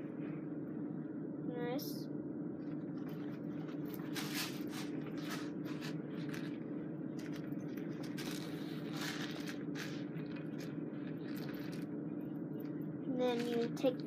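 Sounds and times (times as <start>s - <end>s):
steady low hum: 0.0s - 14.0s
straps rustling and scraping: 2.6s - 6.6s, 7.2s - 11.9s.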